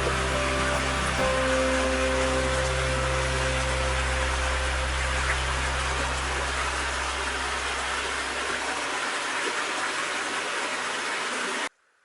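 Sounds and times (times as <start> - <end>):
low background music: 0.0 - 7.3.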